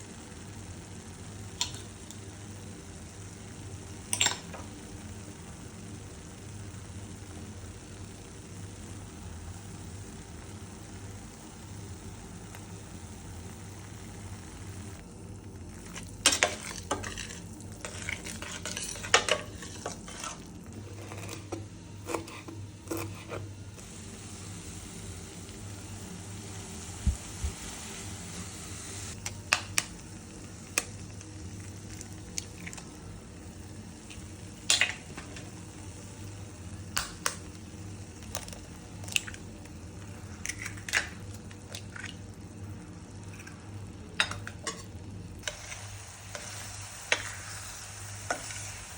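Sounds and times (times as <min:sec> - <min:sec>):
food sizzling: 0:00.0 - 0:48.9
metal utensil scraping frying pan: 0:16.2 - 0:23.5.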